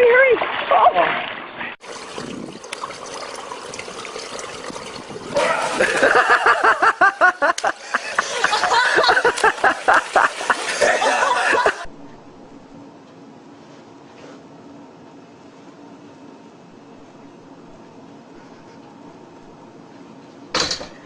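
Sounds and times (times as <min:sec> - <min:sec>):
person laughing hard: 0:05.4 - 0:11.9.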